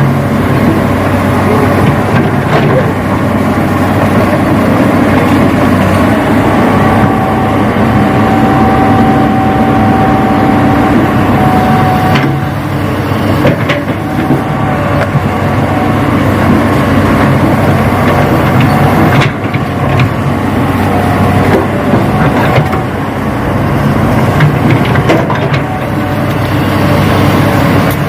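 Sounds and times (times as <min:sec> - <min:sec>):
high motor whine: 0:02.3 - 0:24.2.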